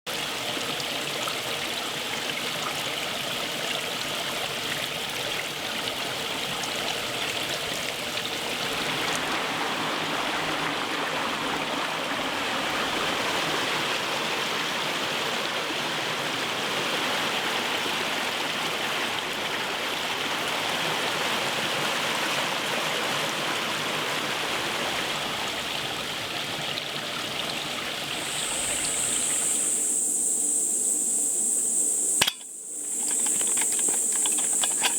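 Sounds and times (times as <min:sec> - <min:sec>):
water rushing: 0:04.0 - 0:29.8.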